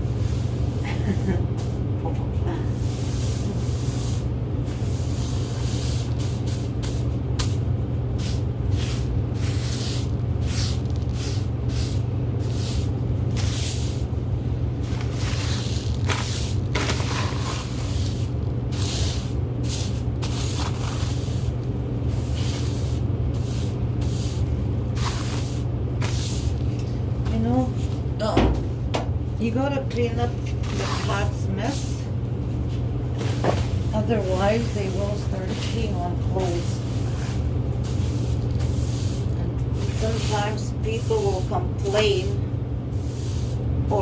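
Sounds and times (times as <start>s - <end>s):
low machine hum: 0.0s - 44.0s
soft rustling and scraping: 32.5s - 42.2s.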